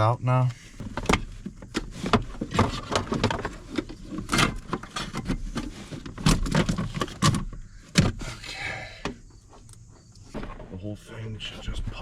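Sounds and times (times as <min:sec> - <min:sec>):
knocks clicks and scraping: 0:00.5 - 0:08.4.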